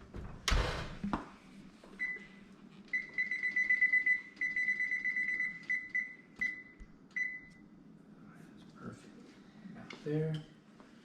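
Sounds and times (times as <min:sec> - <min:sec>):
oven control panel beeps: 0:02.9 - 0:07.6.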